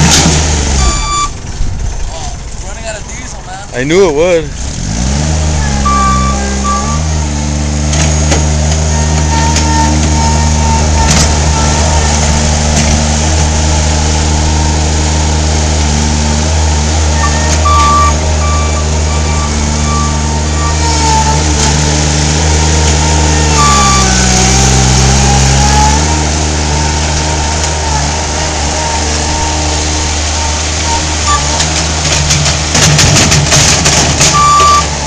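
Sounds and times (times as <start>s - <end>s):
skid steer engine running: 0.0s - 35.0s
short high beeps: 0.8s - 1.4s, 5.7s - 7.1s, 17.2s - 20.9s, 23.5s - 24.2s, 34.3s - 34.9s.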